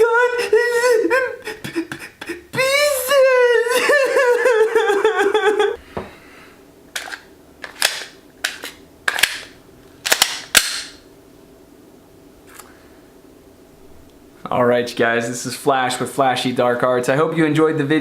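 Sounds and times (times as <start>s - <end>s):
wailing voice: 0.0s - 1.4s, 2.5s - 5.8s.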